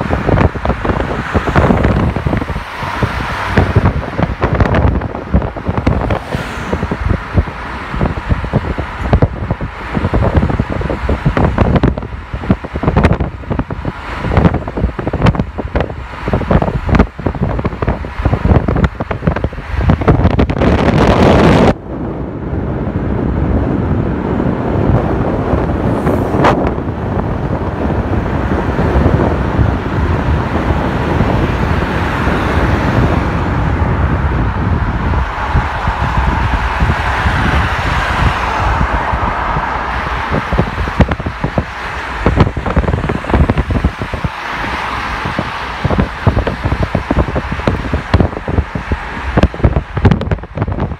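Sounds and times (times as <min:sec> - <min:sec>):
car road noise: 0:00.0 - 0:50.9
wind buffeting microphone: 0:00.0 - 0:50.9.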